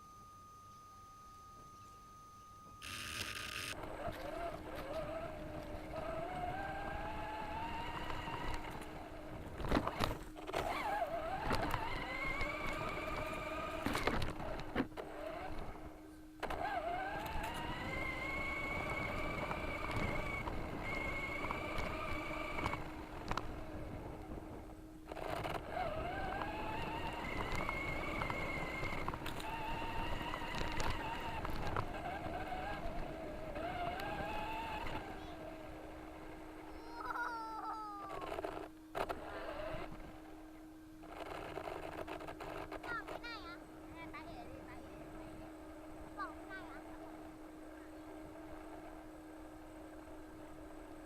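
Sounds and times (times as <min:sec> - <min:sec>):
rc car electric motor whining: 0:02.8 - 0:40.4, 0:41.0 - 0:43.4.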